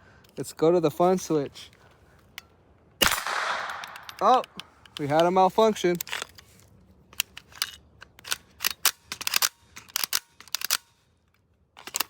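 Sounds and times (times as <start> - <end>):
rifle clicking and clacking: 3.0 - 6.4, 7.1 - 11.0, 11.8 - 12.0.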